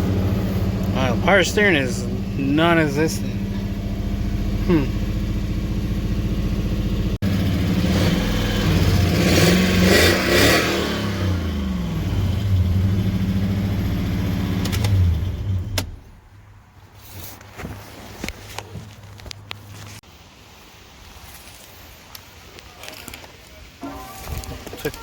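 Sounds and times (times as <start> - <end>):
car engine revving: 0.0 - 16.2.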